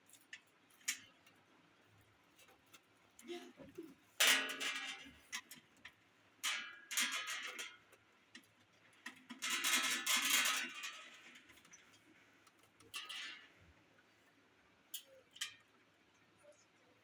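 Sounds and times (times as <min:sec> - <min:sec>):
metal clattering and scraping: 0:03.7 - 0:05.6, 0:09.1 - 0:13.5.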